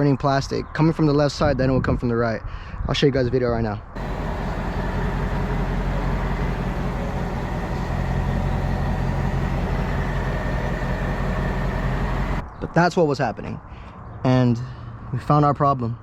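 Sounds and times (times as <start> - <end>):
car engine idling: 4.0 - 12.4.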